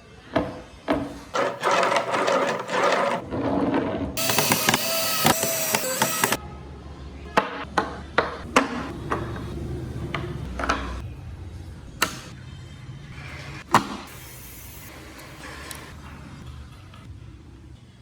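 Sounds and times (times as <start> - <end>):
workshop machine running: 1.4 - 3.2, 4.2 - 6.4, 13.2 - 16.4.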